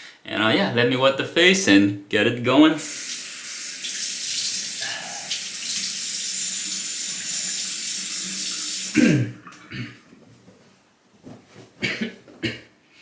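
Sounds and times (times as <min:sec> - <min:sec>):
sink tap running: 0:02.8 - 0:09.0.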